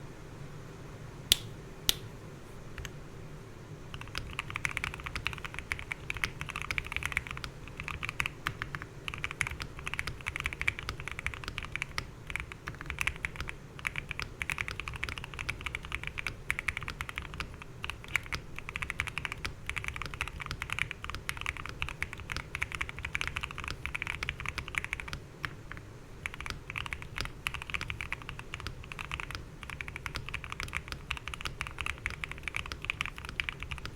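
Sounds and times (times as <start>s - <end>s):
fast keyboard typing: 4.0s - 33.9s.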